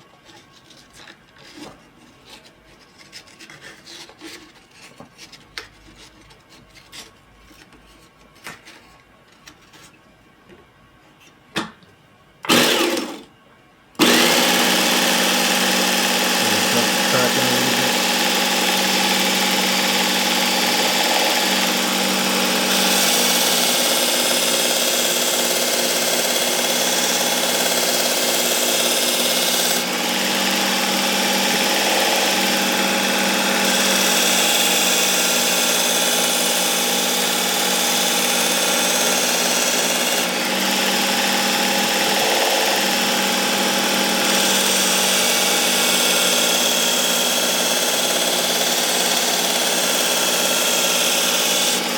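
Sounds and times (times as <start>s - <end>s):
belt sharpener grinding metal: 12.5s - 13.2s, 14.0s - 51.9s.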